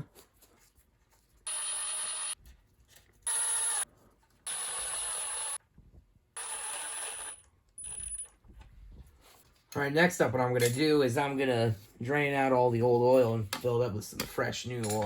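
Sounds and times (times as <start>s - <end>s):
impact driver whirring: 4.5s - 5.6s.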